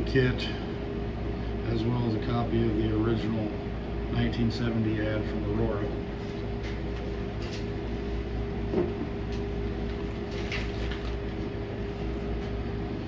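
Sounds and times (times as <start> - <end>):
room hum: 0.0 - 13.0
paper and plastic rustling: 10.2 - 12.0.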